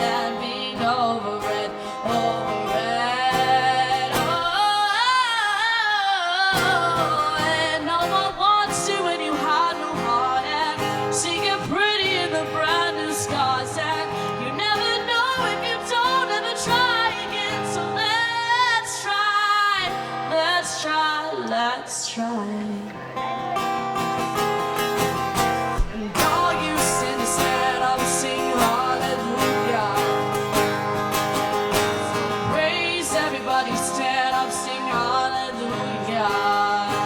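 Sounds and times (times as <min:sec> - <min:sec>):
woman singing: 0:00.0 - 0:23.1, 0:25.8 - 0:37.0.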